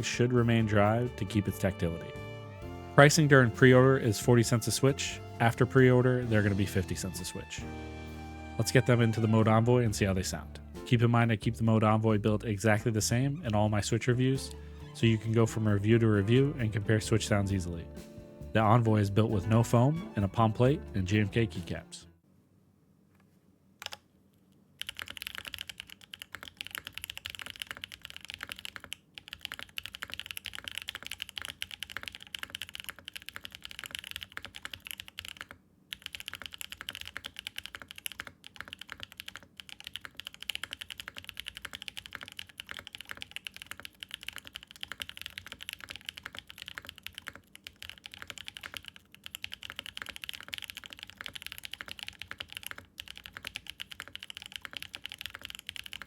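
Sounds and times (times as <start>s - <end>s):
mechanical keyboard typing: 23.8s - 24.0s, 24.8s - 56.0s.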